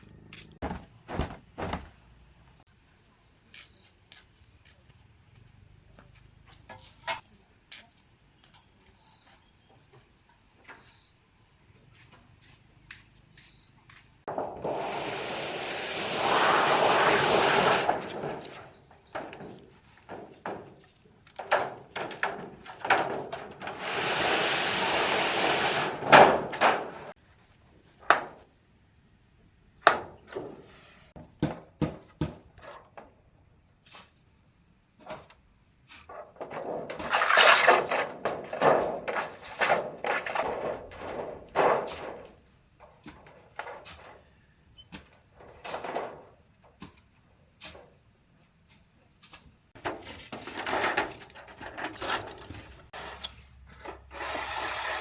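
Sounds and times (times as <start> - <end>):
knocks and thuds: 0.6 - 2.0, 14.3 - 15.1, 16.3 - 24.2, 24.8 - 27.1, 31.2 - 32.6
rustling or scraping noise: 0.6 - 2.0, 35.9 - 42.4, 49.3 - 55.0.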